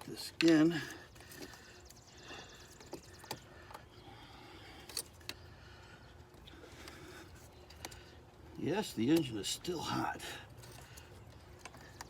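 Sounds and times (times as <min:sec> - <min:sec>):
faint background hum: 0:00.0 - 0:12.0
clicks and knocks of hands working: 0:02.6 - 0:03.9, 0:06.2 - 0:08.2, 0:10.6 - 0:12.0.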